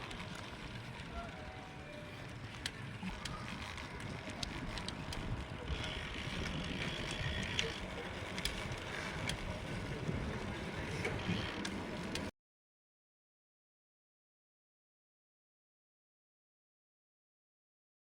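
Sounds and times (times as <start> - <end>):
outdoor background noise: 0.0 - 12.3
light clicks and ticks: 2.3 - 9.7, 10.4 - 12.3.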